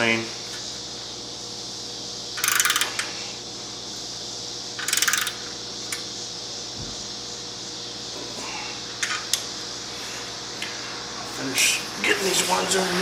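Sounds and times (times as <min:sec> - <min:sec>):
ratchet wrench clicking: 0:02.4 - 0:03.1, 0:04.8 - 0:06.0.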